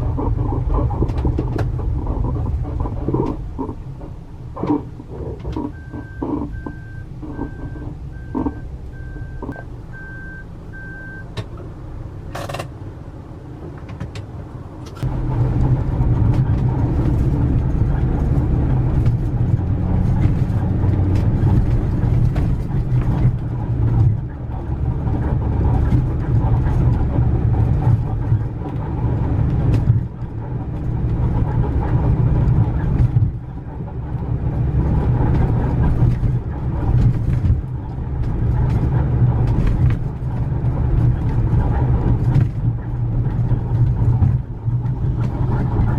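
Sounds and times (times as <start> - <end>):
van engine and road noise: 0.0 - 45.9
reversing alarm beeps: 5.7 - 11.3.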